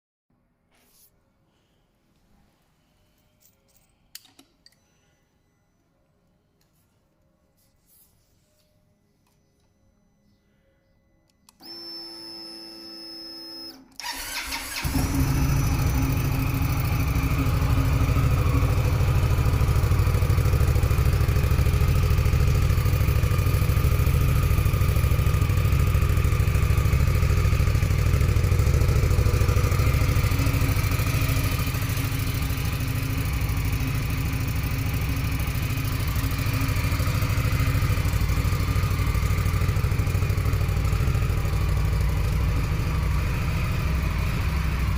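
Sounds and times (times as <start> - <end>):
motorcycle starter cranking: 14.0 - 17.0
motorcycle engine idling: 14.0 - 44.9.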